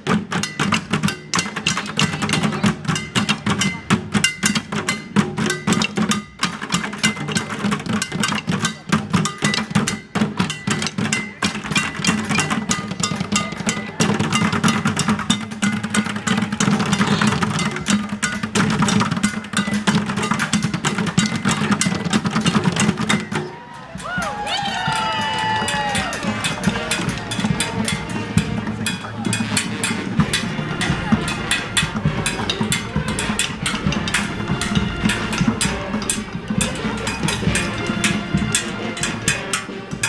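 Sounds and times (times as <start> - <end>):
driving drum and percussion rhythm: 0.0 - 40.0
street band playing: 0.0 - 40.0.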